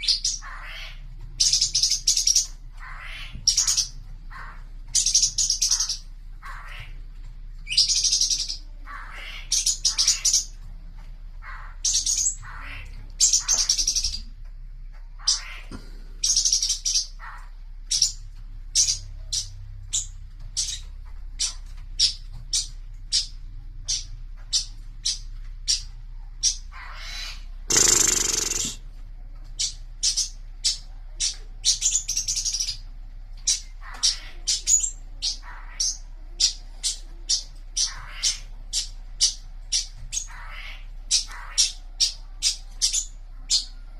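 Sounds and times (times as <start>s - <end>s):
songbird singing: 0.0s - 7.0s, 7.6s - 10.6s, 11.4s - 28.8s.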